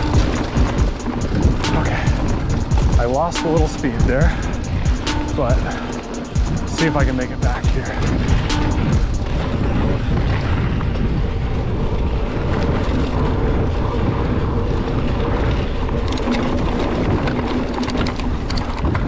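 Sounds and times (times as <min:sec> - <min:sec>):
bike clicks and rattles: 0:00.0 - 0:19.0
wind buffeting microphone: 0:00.0 - 0:19.0.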